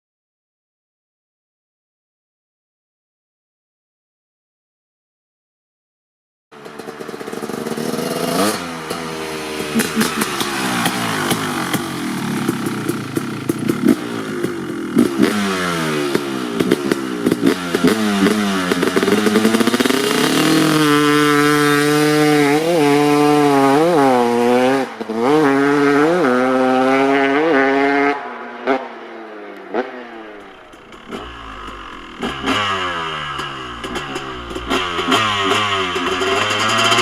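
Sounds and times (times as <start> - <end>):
motocross engine revving: 6.6 - 37.0.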